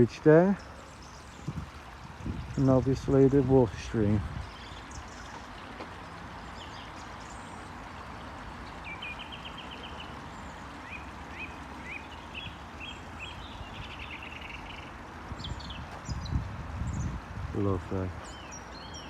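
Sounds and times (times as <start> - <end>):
small stream running: 0.0 - 19.0
songbirds trilling and chirping: 0.0 - 19.0.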